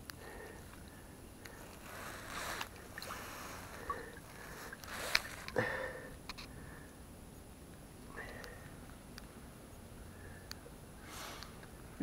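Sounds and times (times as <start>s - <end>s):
soft water splashes: 0.2s - 6.8s.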